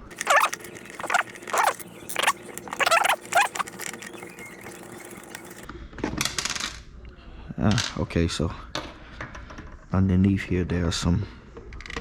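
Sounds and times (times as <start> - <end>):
hand tool mechanical strokes: 0.0 - 5.7.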